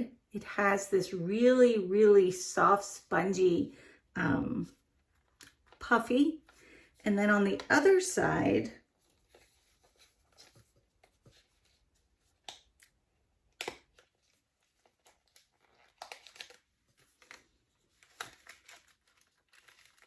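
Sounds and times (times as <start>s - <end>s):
light paper rustles: 8.9s - 12.5s, 14.0s - 20.0s.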